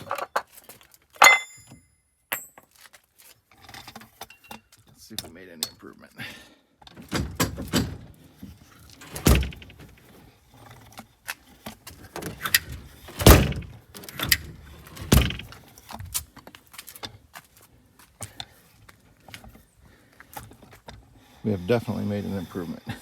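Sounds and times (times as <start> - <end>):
bus door thudding shut: 7.0 - 8.1, 9.0 - 10.0, 12.2 - 15.6
metallic clicks and rattles: 8.9 - 10.0, 12.0 - 15.6.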